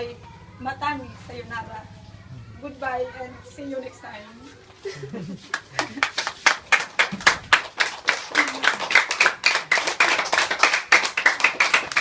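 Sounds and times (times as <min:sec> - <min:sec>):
small group applauding: 0:05.4 - 0:12.0.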